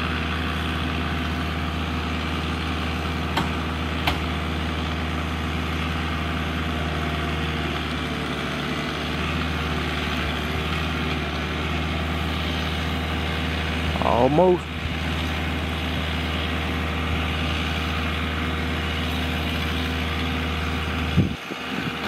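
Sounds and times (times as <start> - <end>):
heavy machine engine under load: 0.0 - 22.0
wood snapping: 3.3 - 4.3.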